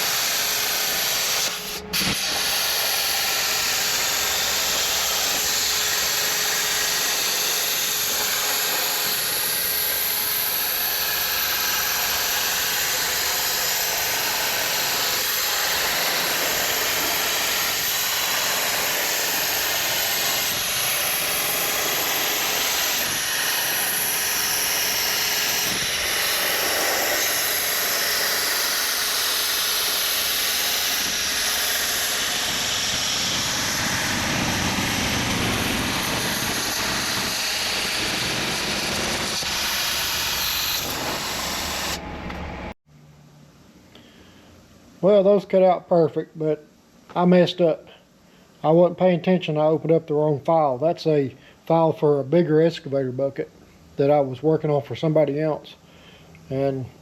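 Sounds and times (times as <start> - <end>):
plasma torch cutting steel hiss: 0.0 - 42.0.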